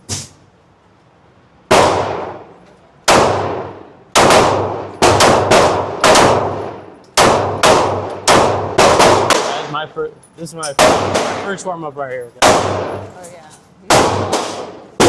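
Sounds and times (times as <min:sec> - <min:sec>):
gunshots with ringing tail: 0:01.7 - 0:02.5, 0:03.1 - 0:09.8, 0:10.8 - 0:11.6, 0:12.4 - 0:13.1, 0:13.9 - 0:15.0.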